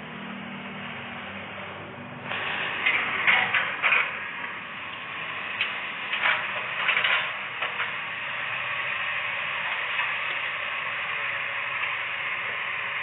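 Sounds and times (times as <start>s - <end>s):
excavator running: 0.0s - 13.0s
metal clanks and scrapes: 2.3s - 4.6s, 5.6s - 8.0s.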